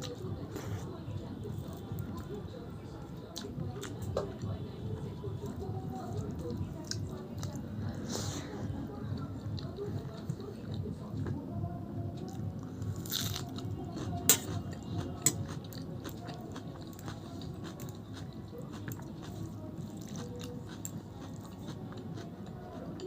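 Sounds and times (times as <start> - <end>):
person chewing food: 3.3 - 8.0, 12.2 - 23.0.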